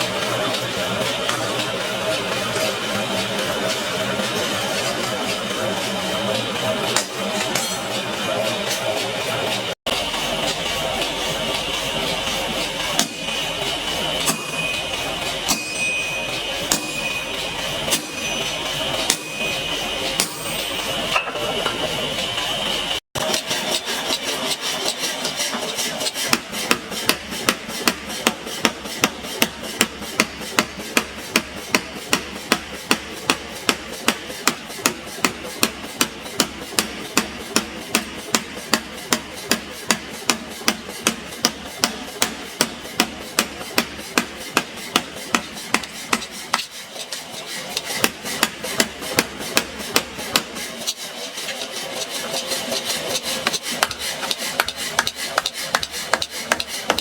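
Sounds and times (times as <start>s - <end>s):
hammer striking metal on anvil: 6.9s - 8.1s, 12.8s - 13.4s, 14.2s - 21.9s, 26.2s - 46.7s.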